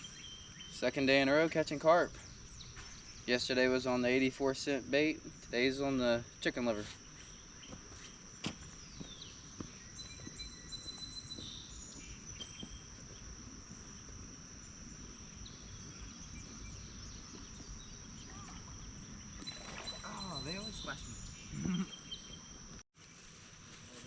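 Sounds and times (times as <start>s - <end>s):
insects buzzing: 0.0s - 24.0s
whistled bird calls: 16.0s - 22.6s.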